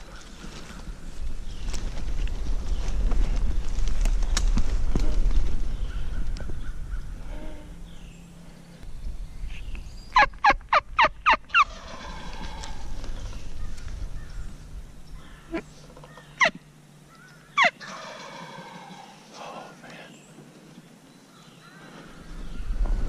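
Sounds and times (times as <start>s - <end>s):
turkey yelping: 10.2s - 12.7s, 15.5s - 16.6s, 17.6s - 18.9s.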